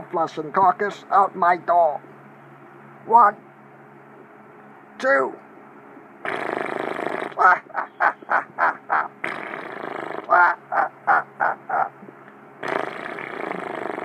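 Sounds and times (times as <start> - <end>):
man making quack-like cries: 7.3 - 9.4, 10.2 - 12.0
breathy hissing: 8.9 - 10.9, 12.6 - 14.0.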